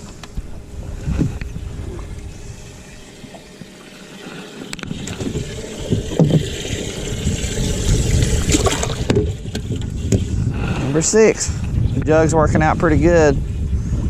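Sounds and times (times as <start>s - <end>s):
water around boat: 0.0s - 14.0s
wind: 0.0s - 14.0s.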